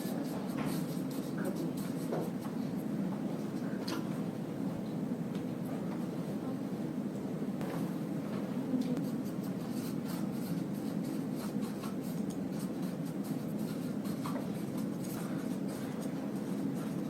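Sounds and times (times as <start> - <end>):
scratchy writing strokes: 0.0 - 2.9, 9.0 - 17.0
low room rumble: 0.0 - 17.0.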